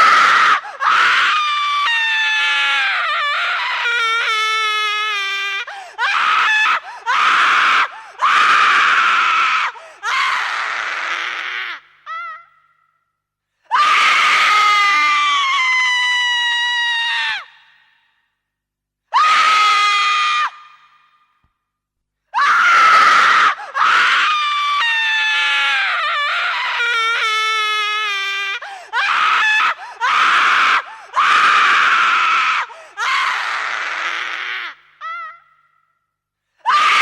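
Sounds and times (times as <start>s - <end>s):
woman screaming: 13.7s - 17.6s, 19.2s - 21.0s, 22.4s - 35.7s.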